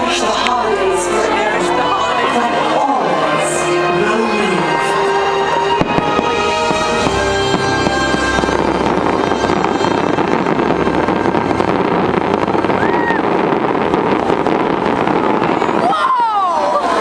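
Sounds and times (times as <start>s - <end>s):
music with steady notes: 0.0s - 12.8s
fireworks bangs and crackling: 0.0s - 17.0s.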